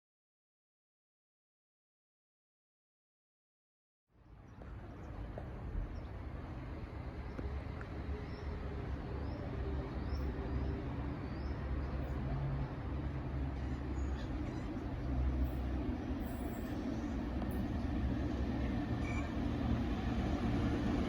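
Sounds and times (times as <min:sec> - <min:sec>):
freight train diesel rumble: 0:04.3 - 0:21.0.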